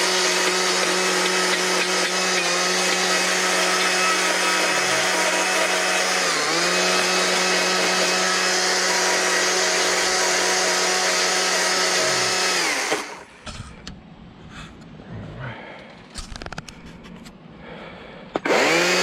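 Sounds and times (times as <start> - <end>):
power carving tool on wood: 0.0 - 13.4, 18.4 - 19.0.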